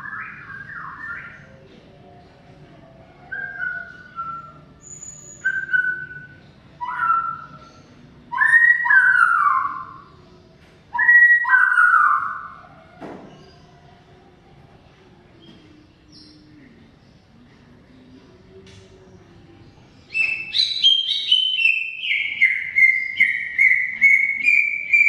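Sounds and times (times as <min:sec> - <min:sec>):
bird singing whistled phrases: 0:03.3 - 0:07.7, 0:08.3 - 0:10.0, 0:10.9 - 0:12.5, 0:20.1 - 0:25.0.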